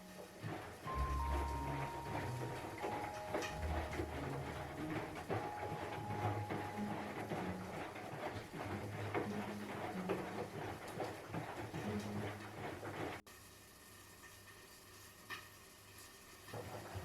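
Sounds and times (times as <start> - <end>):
washing machine drum clattering: 0.0 - 13.2.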